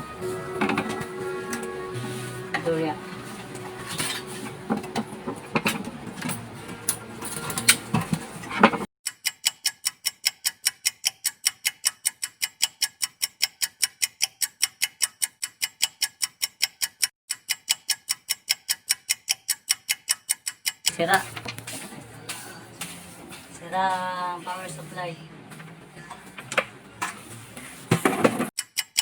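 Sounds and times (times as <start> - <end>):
clock ticking: 9.1 - 22.4, 28.6 - 29.0.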